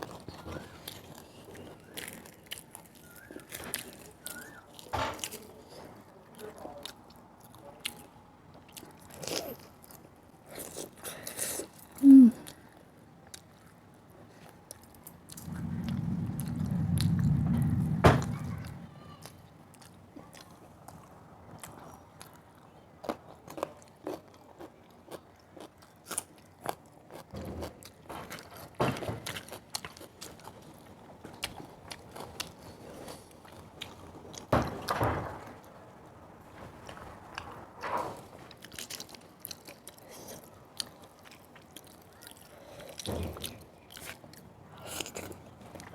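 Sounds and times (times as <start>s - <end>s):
chewing and biting food: 6.3s - 12.6s, 19.7s - 34.5s, 38.5s - 45.9s
low rumbling noise: 15.3s - 19.9s.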